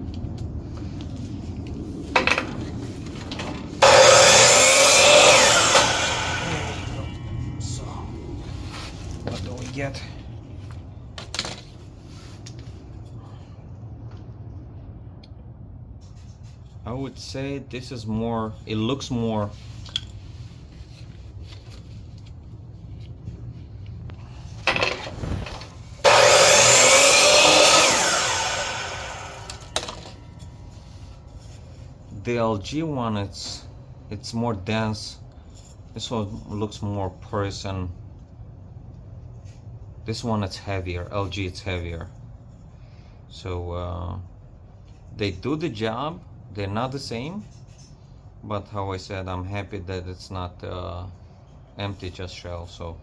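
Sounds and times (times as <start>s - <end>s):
harsh rasping cut: 3.8s - 7.2s, 26.0s - 30.1s.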